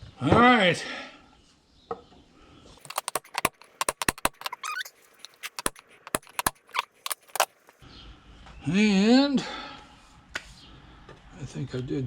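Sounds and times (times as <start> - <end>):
metal parts and tools clinking: 2.8 - 7.8
brief warbling squeak: 4.5 - 5.0.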